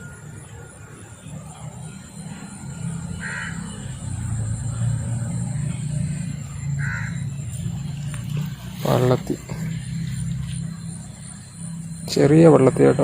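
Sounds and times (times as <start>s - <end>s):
crow cawing: 2.8s - 4.4s, 6.6s - 7.4s.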